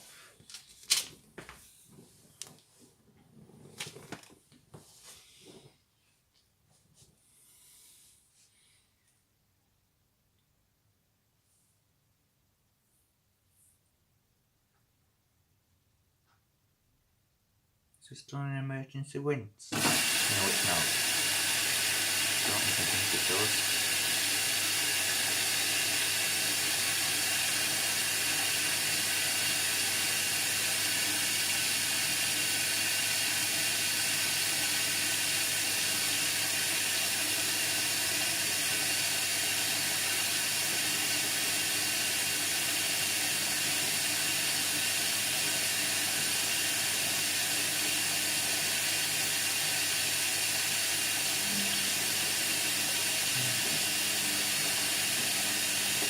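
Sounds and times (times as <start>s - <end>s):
water running into drum: 19.7s - 56.0s.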